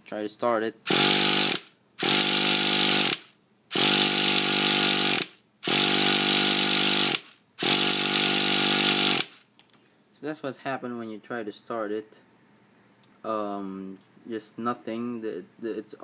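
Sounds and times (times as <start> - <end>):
electric starter whirring: 0.9 - 9.4.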